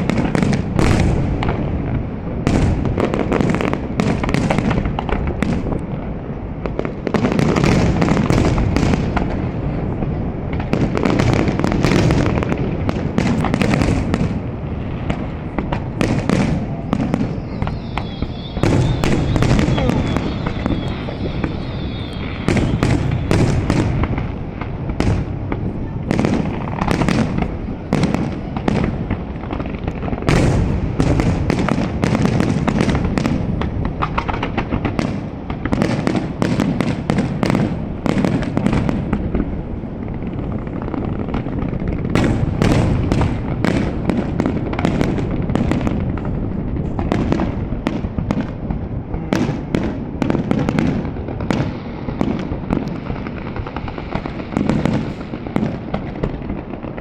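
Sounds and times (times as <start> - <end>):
fireworks bursts and crackles: 0.0 - 57.0
low rumble of booms: 7.7 - 35.7.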